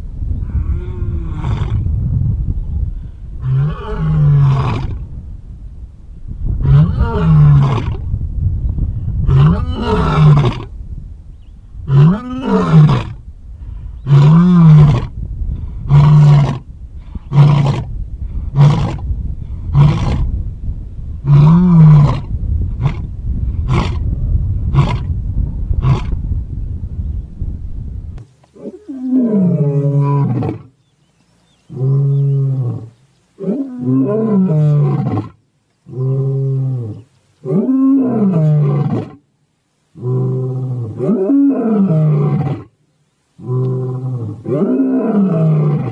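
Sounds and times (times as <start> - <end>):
lion roaring: 43.4 - 45.9.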